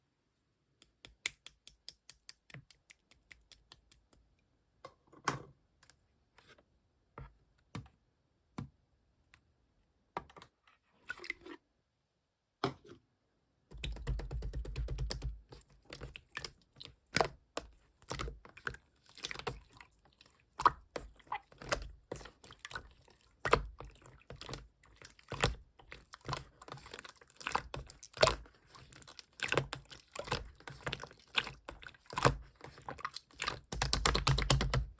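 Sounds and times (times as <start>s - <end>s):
slime clicking and popping: 33.4s - 34.9s.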